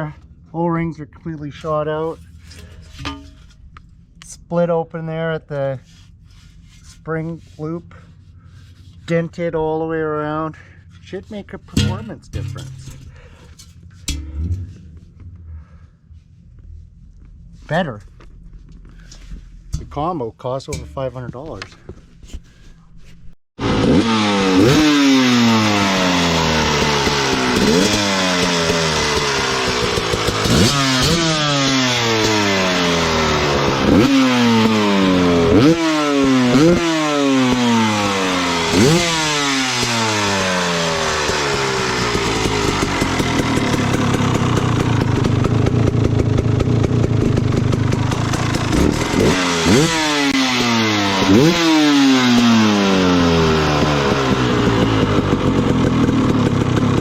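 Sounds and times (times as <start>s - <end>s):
dirt bike engine revving and idling: 9.1s - 16.0s, 23.6s - 57.0s.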